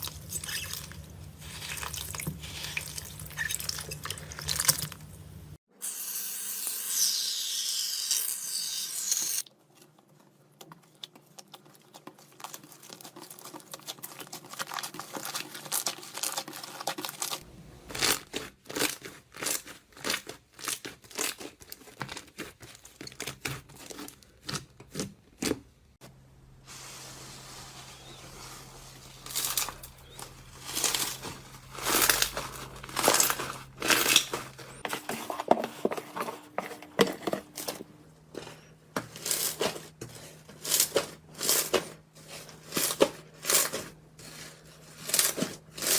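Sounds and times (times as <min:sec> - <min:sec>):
crinkling and tearing: 0:09.4 - 0:25.6, 0:27.8 - 0:45.9.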